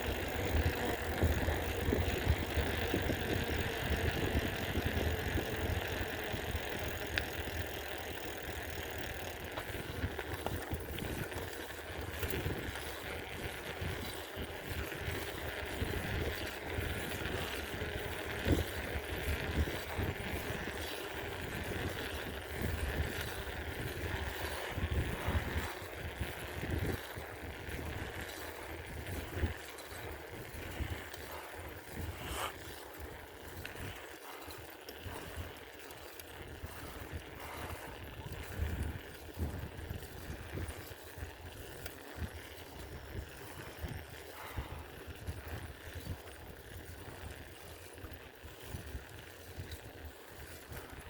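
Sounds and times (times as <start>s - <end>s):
road noise: 0.0s - 38.5s
bicycle knocks and rattles: 0.0s - 51.0s
wind rumbling on microphone: 0.0s - 51.0s.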